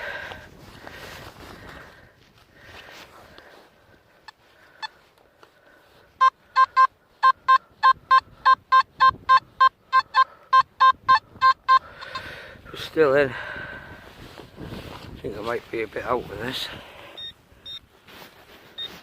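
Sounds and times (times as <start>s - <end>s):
metal detector beeping: 6.2s - 12.3s, 17.1s - 17.8s, 18.8s - 19.0s.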